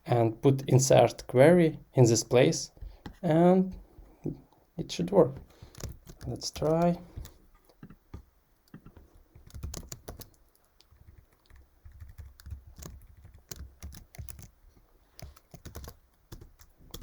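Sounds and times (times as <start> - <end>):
computer keyboard typing: 5.5 - 8.0, 8.7 - 14.6, 15.2 - 17.0.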